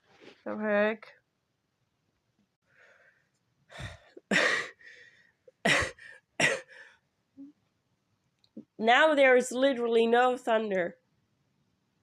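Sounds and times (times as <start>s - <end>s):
person coughing: 3.9s - 4.8s, 5.6s - 6.8s.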